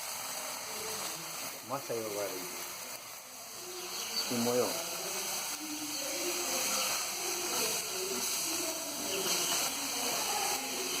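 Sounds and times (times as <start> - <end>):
faint voices: 0.0 - 11.0
stove hissing: 0.0 - 11.0.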